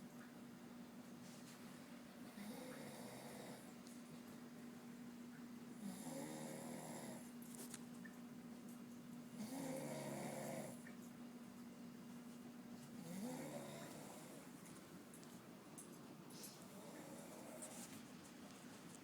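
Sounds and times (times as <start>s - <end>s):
man snoring: 5.8s - 7.2s, 9.4s - 10.8s, 13.0s - 14.4s.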